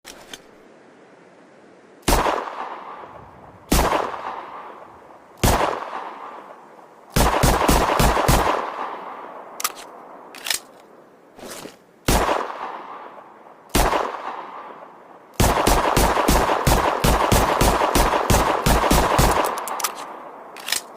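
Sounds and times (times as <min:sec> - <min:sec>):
pistol shots: 0:03.7 - 0:04.7
sharp clicks: 0:19.3 - 0:20.9.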